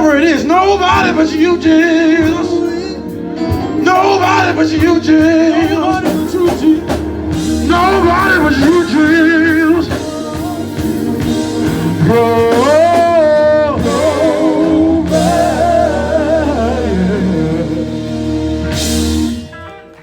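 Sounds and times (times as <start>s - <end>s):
live band playing: 0.0s - 20.0s
person singing with vibrato: 7.5s - 18.4s.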